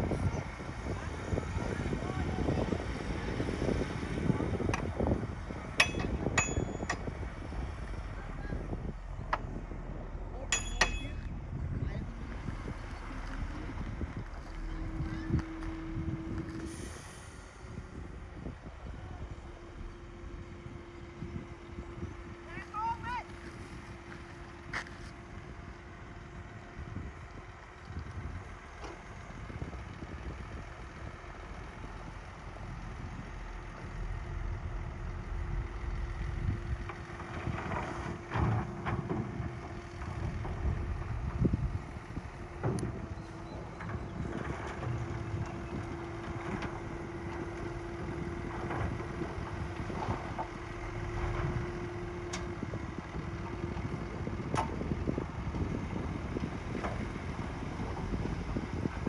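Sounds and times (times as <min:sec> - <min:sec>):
heavy diesel machinery engine rumble: 0:00.0 - 0:59.0
steady whine: 0:04.0 - 0:24.6
sharp clanks and knocks: 0:05.8 - 0:07.4, 0:10.4 - 0:11.4.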